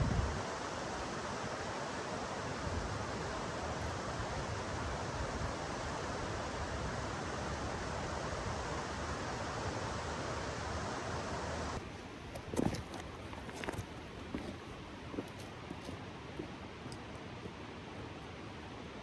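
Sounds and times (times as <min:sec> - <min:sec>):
fast-running creek rushing: 0:11.8 - 0:18.6.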